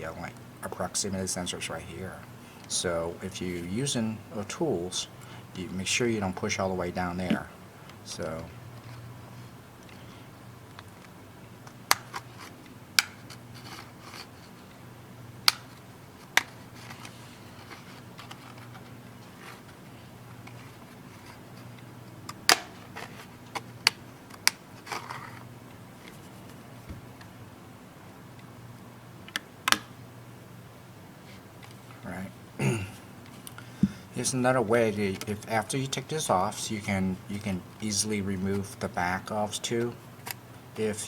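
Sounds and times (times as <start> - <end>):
low steady hum: 0.0 - 41.0
plastic clips snapping: 10.7 - 14.3, 15.4 - 19.6, 21.2 - 25.4, 29.2 - 30.0.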